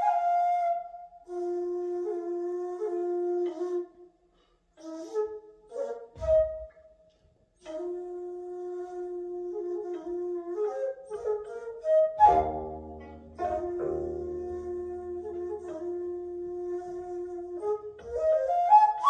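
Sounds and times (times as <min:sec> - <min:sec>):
bamboo flute long notes: 0:00.0 - 0:19.0
plucked zither notes: 0:09.6 - 0:19.0.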